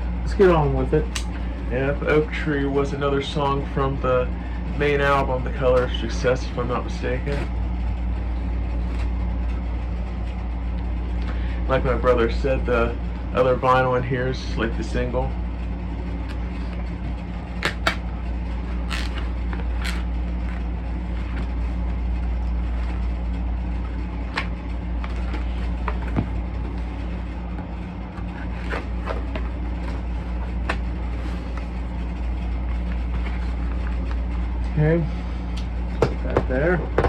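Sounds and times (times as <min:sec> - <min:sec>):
low room hum: 0:00.0 - 0:37.0
record sleeve clicks and rustles: 0:17.6 - 0:18.0, 0:18.8 - 0:20.7.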